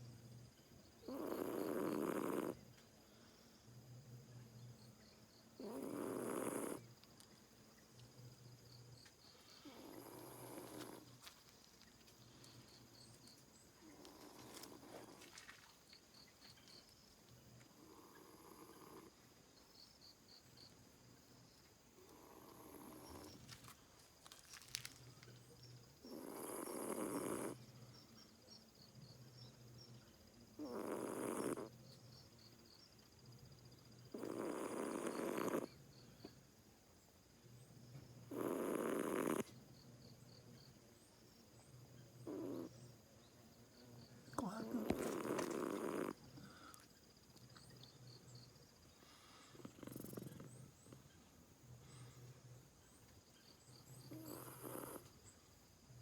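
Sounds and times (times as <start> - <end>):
cat snoring: 1.1 - 2.6, 5.6 - 6.8, 9.6 - 11.0, 17.8 - 19.1, 22.1 - 23.3, 26.1 - 27.6, 30.6 - 31.7, 34.1 - 35.7, 38.3 - 39.5, 42.3 - 42.7, 44.4 - 46.2, 49.1 - 50.6, 54.1 - 55.1.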